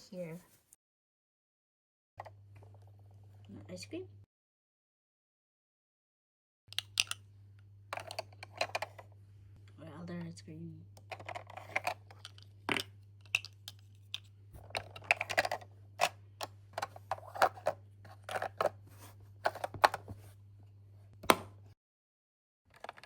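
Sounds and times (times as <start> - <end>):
plastic toys clicking: 6.7 - 7.2, 11.0 - 16.2.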